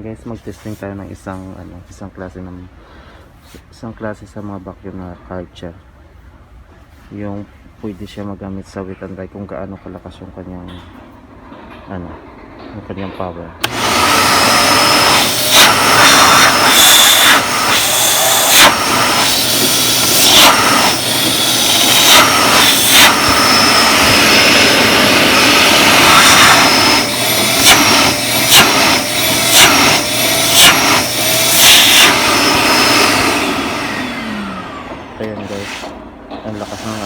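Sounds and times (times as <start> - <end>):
vacuum cleaner running: 13.6 - 37.0.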